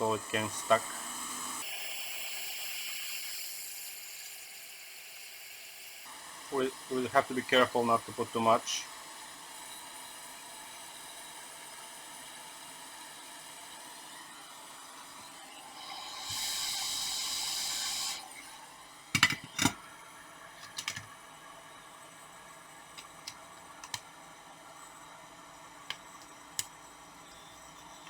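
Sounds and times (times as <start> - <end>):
loud airy hiss: 15.6 - 18.7.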